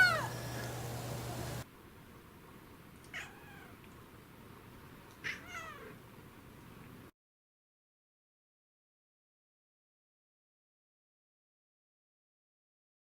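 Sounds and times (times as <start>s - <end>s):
cat meowing: 0.0s - 0.4s, 3.1s - 3.8s, 5.2s - 6.0s.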